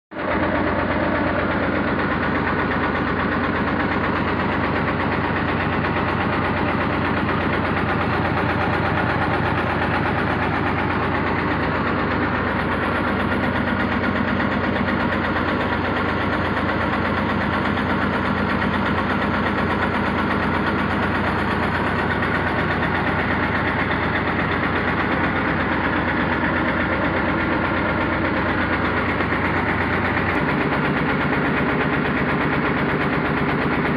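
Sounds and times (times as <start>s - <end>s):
diesel engine pulsing: 0.1s - 33.9s.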